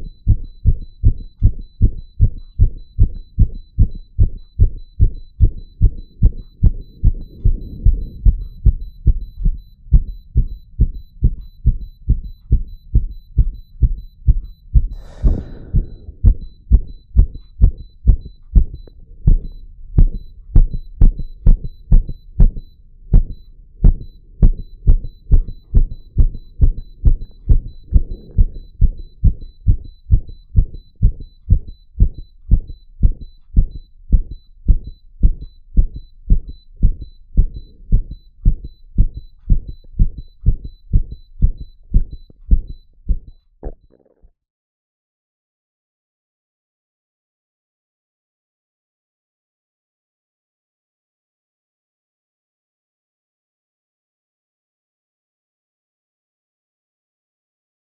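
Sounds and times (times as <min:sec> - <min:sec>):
ecg monitor beep: 0:00.0 - 0:44.1
heartbeat through stethoscope: 0:00.0 - 0:44.2.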